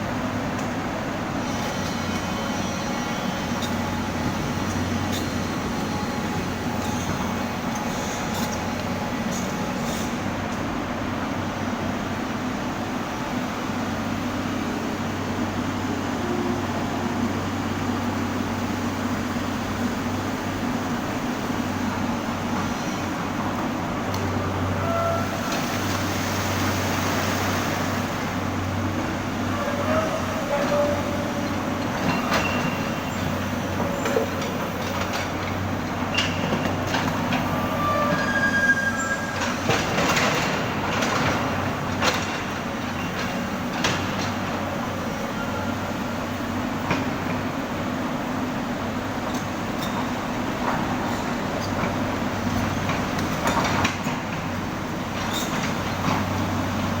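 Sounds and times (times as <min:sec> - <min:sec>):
metallic squeals and clanks: 0:24.8 - 0:25.6, 0:29.5 - 0:34.4, 0:37.4 - 0:39.8.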